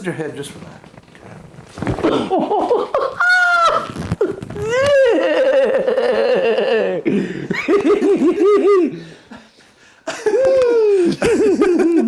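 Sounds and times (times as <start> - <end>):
man laughing loudly: 2.1 - 9.1, 10.1 - 12.0.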